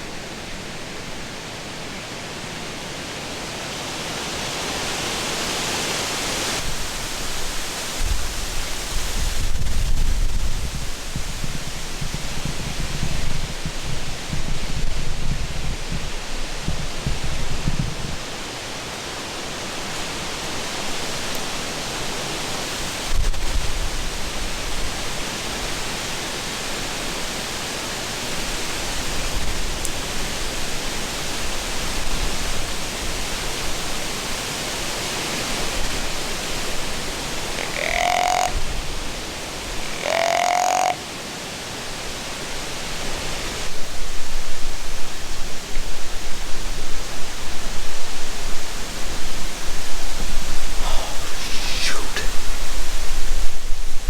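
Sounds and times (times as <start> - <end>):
rushing noise in woods: 0.0 - 54.0
short pitched calls: 37.4 - 38.7, 39.7 - 41.1, 50.7 - 52.6.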